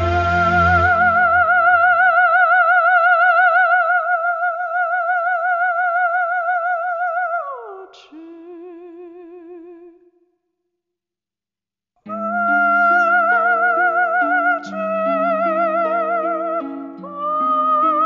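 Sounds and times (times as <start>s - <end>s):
sustained note with vibrato: 0.0s - 2.4s.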